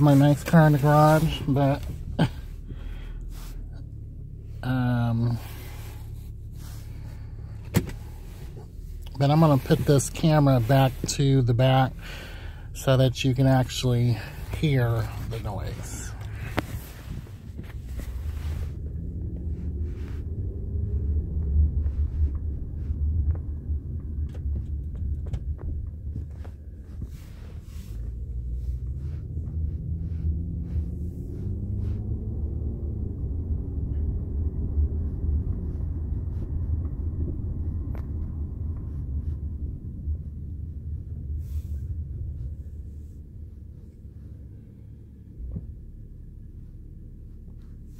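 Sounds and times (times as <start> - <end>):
car engine accelerating: 0.0 - 47.9
low road rumble: 0.0 - 47.9
knocks and clunks: 7.6 - 8.7, 23.2 - 26.6.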